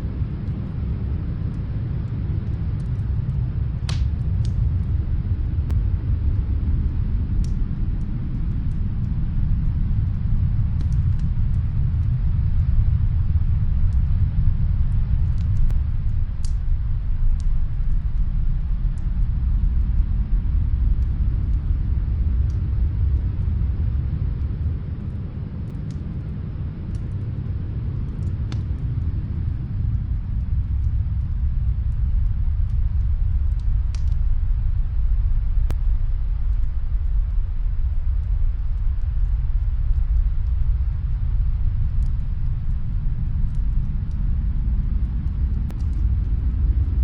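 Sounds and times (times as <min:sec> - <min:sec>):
snowstorm wind rumbling: 0:00.0 - 0:47.0
wood fire crackling: 0:00.0 - 0:47.0.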